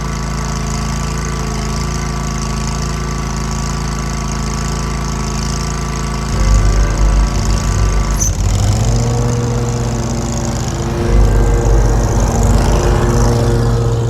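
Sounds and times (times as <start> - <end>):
mower engine running: 0.0 - 14.0
uneven low rumble: 6.3 - 14.0.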